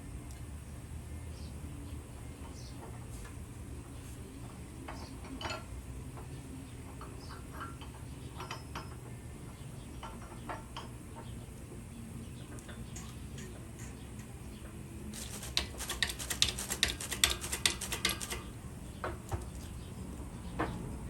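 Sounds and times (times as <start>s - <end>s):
small metal parts clicking: 15.2s - 18.5s.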